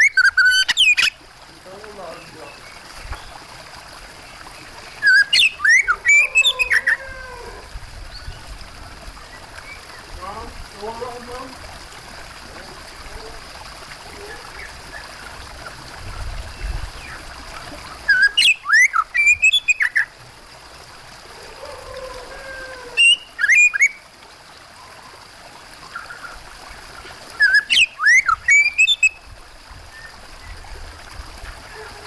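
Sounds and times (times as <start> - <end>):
running water: 0.0 - 32.0
bird singing whistled phrases: 5.0 - 7.0, 18.1 - 20.1, 23.0 - 24.0, 27.4 - 29.2.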